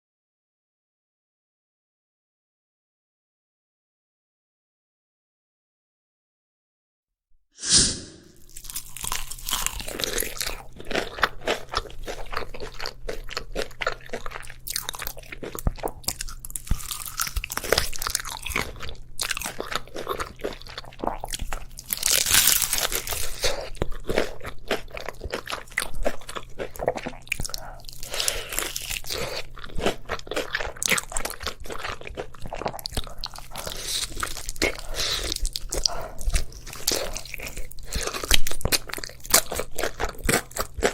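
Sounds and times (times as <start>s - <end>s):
crunching bites of fried chicken: 8.4s - 40.9s.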